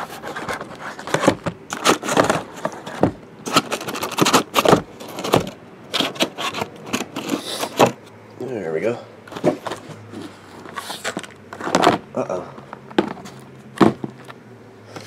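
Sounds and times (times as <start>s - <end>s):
card packaging scrapes and crackles: 0.0s - 8.0s, 9.3s - 12.0s.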